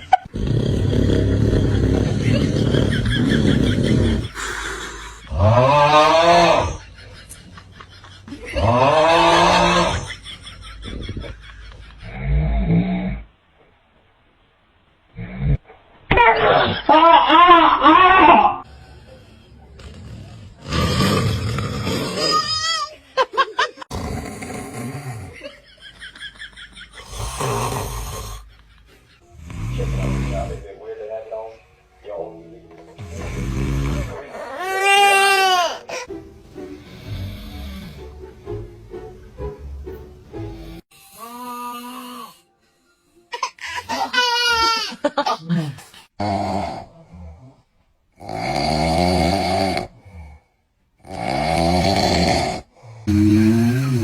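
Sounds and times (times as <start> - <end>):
person snoring loudly: 0.2 - 6.8, 8.4 - 10.1, 12.1 - 13.3, 18.6 - 22.6, 23.9 - 25.5, 27.0 - 28.5, 29.3 - 30.7, 33.0 - 35.7, 36.8 - 38.2, 40.4 - 42.4, 45.5 - 54.0.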